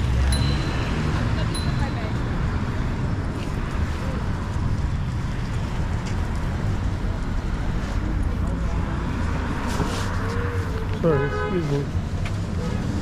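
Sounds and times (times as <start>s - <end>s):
low rumble of street traffic: 0.0s - 13.0s.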